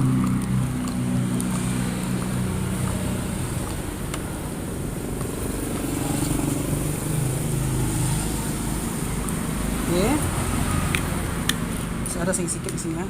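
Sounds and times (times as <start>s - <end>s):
road traffic engines: 0.0s - 13.0s.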